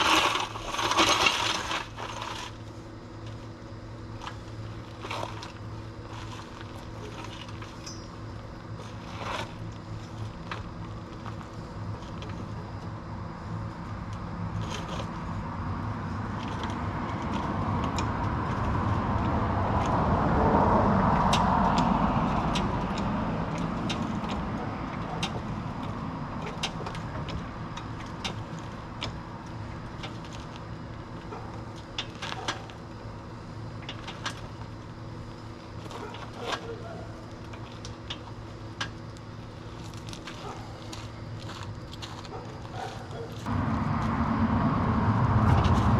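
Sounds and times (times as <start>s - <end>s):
steady low hum: 0.0s - 45.9s
vehicle passing by: 15.0s - 27.2s, 43.4s - 45.9s.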